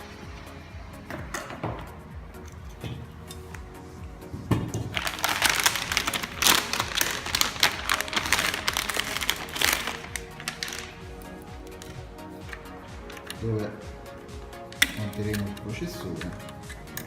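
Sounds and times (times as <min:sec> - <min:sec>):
plastic packaging crinkling: 0:04.9 - 0:12.0.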